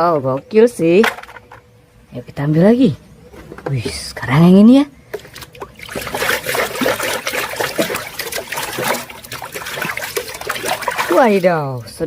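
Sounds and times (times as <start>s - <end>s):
plastic toy clicks and knocks: 1.0s - 1.6s
water running and splashing: 5.1s - 12.0s.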